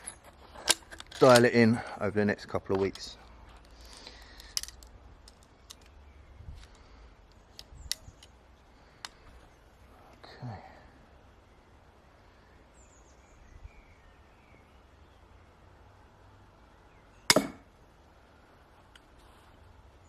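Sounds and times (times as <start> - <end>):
crossbow shot crack: 17.3 - 17.7.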